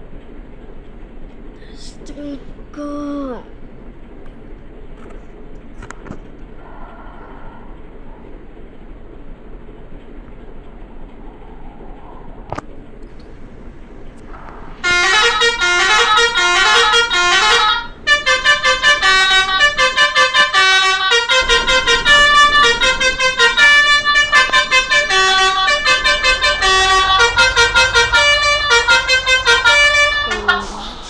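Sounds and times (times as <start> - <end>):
bus musical horn playing a tune: 14.8 - 31.0.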